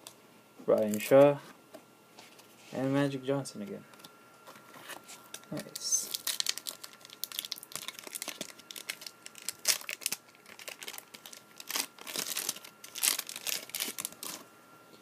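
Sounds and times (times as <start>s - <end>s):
cards rustling: 4.0s - 14.4s
wrapper crinkling and tearing: 5.2s - 14.4s.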